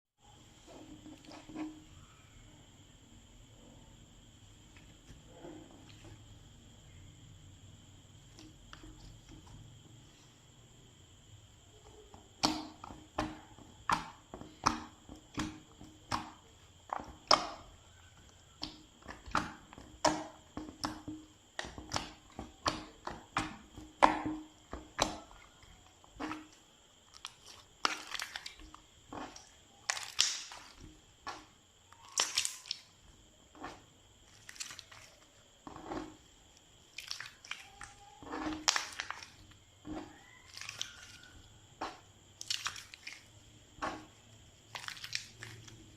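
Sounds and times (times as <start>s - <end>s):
slime crackling and squelching: 12.1s - 45.9s.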